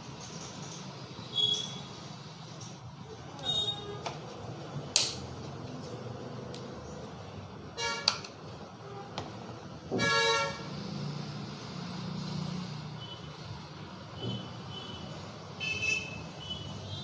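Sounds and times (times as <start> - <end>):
vehicle horns honking: 7.8 - 8.2, 10.0 - 10.7, 14.2 - 17.0.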